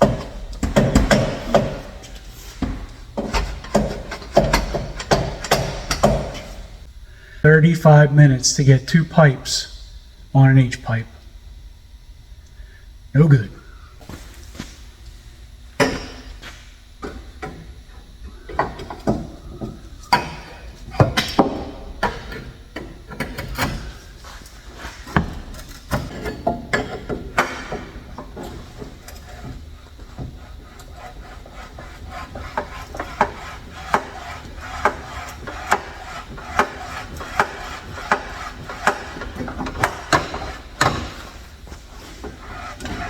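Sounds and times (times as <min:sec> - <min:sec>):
sharp knocks on pipes: 0:00.0 - 0:02.0, 0:02.6 - 0:06.6, 0:31.2 - 0:41.3
metal pipes scraping: 0:26.1 - 0:43.0.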